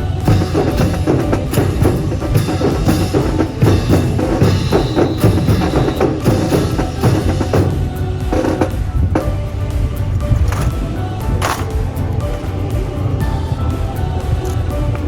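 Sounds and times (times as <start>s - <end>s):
heavy bass drum: 0.0s - 15.0s
marching band snare drums: 0.2s - 9.3s.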